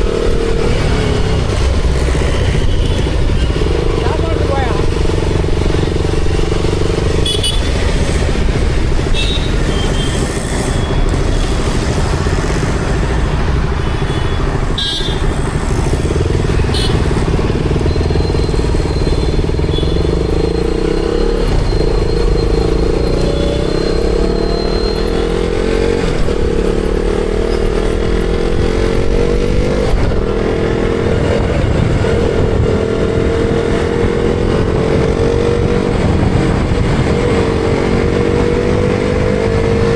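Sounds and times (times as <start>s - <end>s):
road and wind noise: 0.0s - 39.9s
motorcycle engine running: 14.7s - 38.9s.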